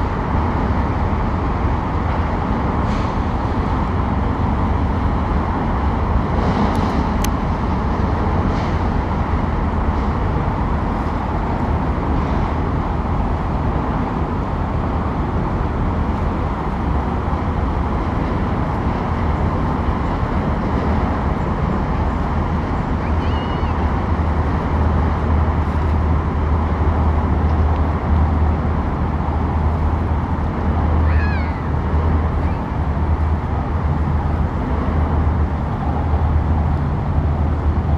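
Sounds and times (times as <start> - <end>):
low rumble with broad noise: 0.0 - 37.9
short high calls: 23.0 - 23.8, 31.0 - 31.7.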